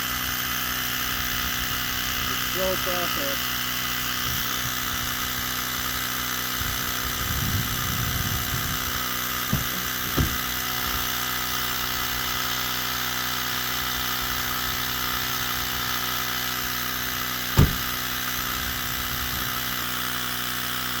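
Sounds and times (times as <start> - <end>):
tire inflator running: 0.0 - 21.0
knocks: 9.5 - 10.4, 17.6 - 17.9.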